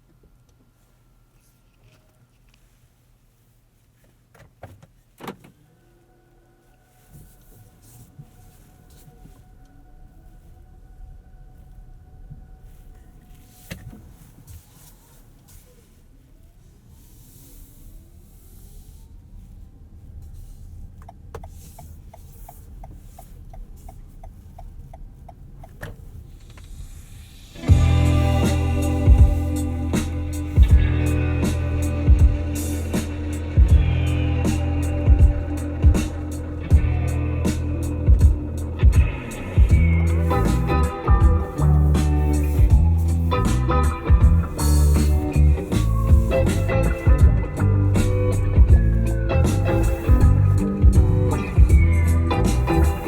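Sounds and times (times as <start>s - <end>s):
hybrid car whine: 5.2s - 17.0s
road rumble: 5.6s - 53.0s
light regular ticking: 21.0s - 26.1s
sharp clicks in car cabin: 21.0s - 26.8s
music from car sound system: 26.5s - 53.0s.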